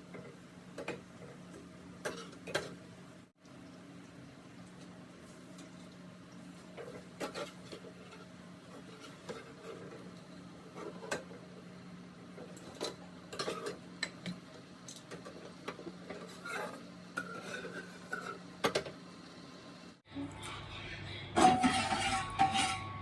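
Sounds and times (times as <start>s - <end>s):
utensils and dishes clinking: 12.4s - 19.0s, 21.4s - 23.0s
utensil scraping: 21.4s - 22.9s.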